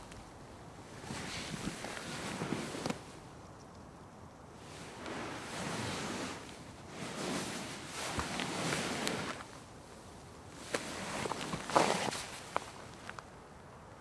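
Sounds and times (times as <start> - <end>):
couch upholstery rustling: 0.9 - 3.2, 4.6 - 13.1.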